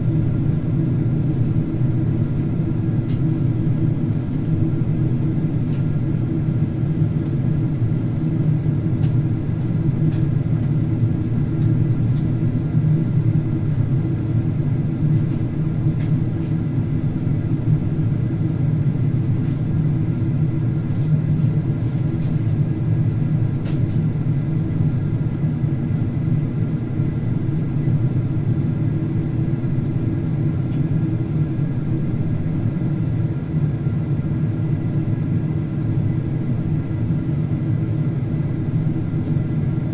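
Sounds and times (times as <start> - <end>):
aircraft cabin rumble: 0.0 - 39.9.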